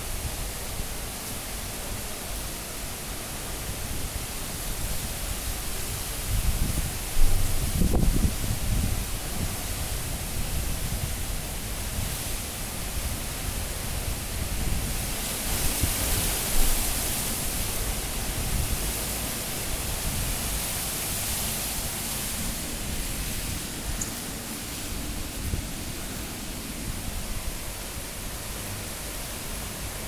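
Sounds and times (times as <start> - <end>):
high winds blowing: 2.9 - 30.0
wind buffeting microphone: 3.6 - 30.0.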